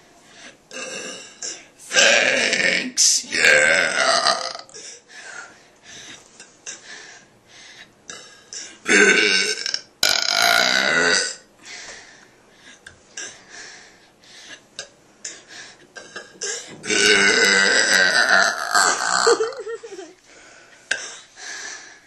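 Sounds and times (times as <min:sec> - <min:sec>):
quiet breathing: 0:00.0 - 0:00.7, 0:04.8 - 0:08.8, 0:11.6 - 0:14.7, 0:15.3 - 0:15.9, 0:20.2 - 0:22.0
person burping loudly: 0:00.7 - 0:04.8, 0:08.1 - 0:11.4, 0:16.0 - 0:19.7.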